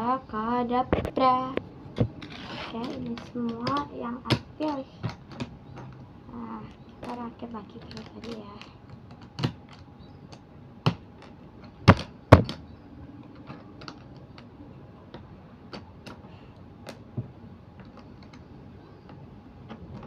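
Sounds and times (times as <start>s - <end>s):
plastic building pieces clicking: 2.1s - 6.0s, 6.6s - 12.6s, 13.2s - 14.5s.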